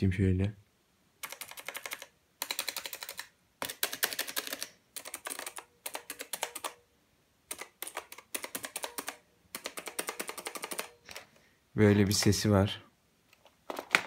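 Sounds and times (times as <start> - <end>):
mechanical keyboard typing: 1.2 - 6.8, 7.5 - 11.3.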